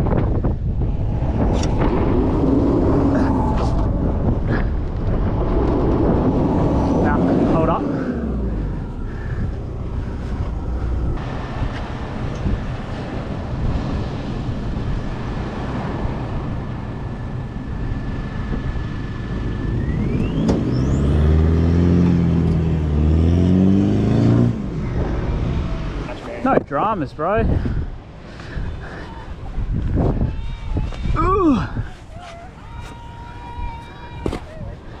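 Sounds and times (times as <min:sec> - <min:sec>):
steady rushing noise: 0:00.0 - 0:23.2, 0:24.2 - 0:35.0
car engine revving: 0:00.6 - 0:26.4
thin steady whistle: 0:19.6 - 0:21.0.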